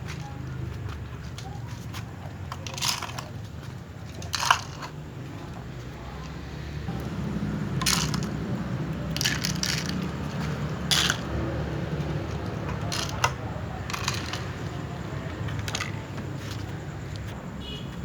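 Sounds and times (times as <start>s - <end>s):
cats crunching food: 7.0s - 14.8s.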